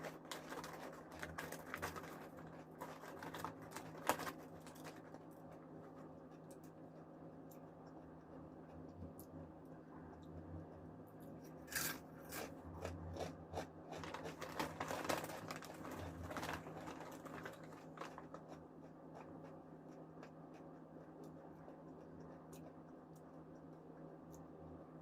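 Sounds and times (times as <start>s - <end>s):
chips being crunched and chewed: 0.0s - 5.3s, 11.5s - 18.6s.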